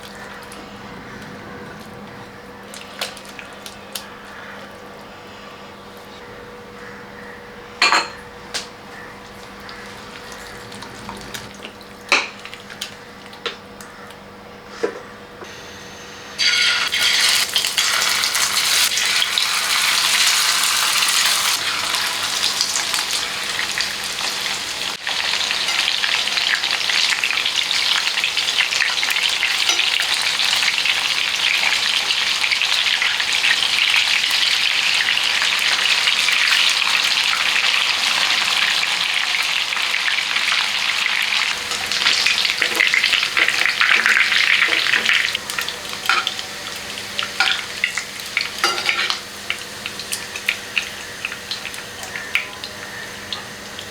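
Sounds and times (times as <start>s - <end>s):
food sizzling in hot oil: 15.4s - 53.9s.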